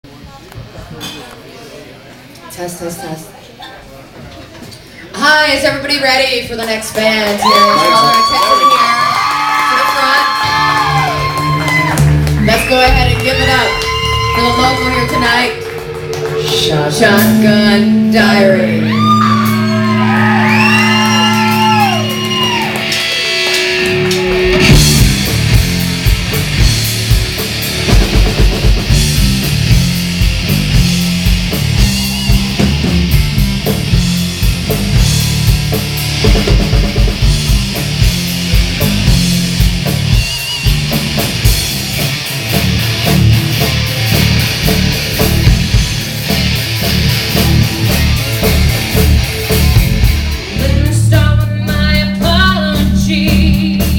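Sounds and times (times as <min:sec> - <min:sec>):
live rock band playing: 0:07.5 - 0:53.9
held sliding guitar notes: 0:11.5 - 0:27.8.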